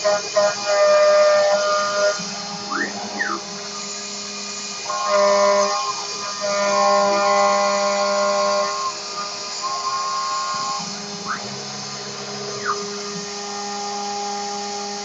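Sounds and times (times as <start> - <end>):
milling machine whine: 0.0 - 15.0.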